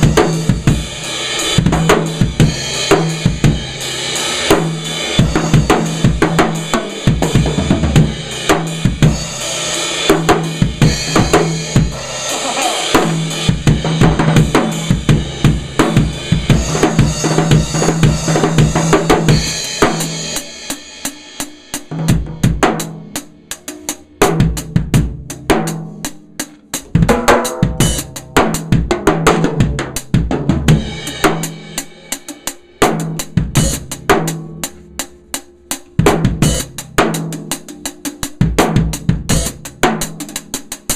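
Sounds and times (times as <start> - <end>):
drum kit playing: 0.0 - 40.9.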